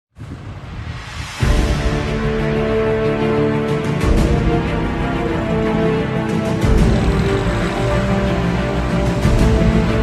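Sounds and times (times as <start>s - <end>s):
noisy rushing hiss: 0.2s - 2.9s
background music with held tones: 1.4s - 10.0s.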